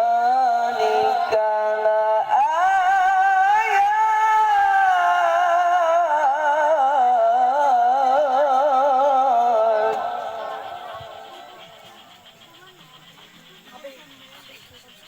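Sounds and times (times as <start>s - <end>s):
voice chanting recitation: 0.0s - 15.0s.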